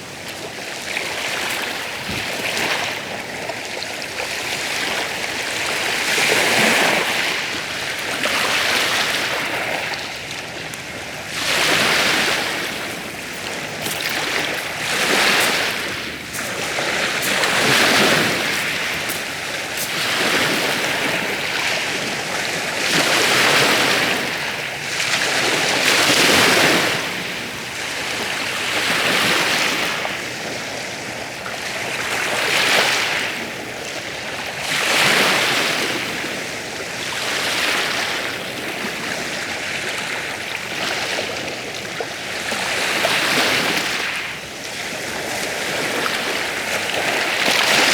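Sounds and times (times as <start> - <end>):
sea waves breaking: 0.0 - 30.3, 42.7 - 47.9.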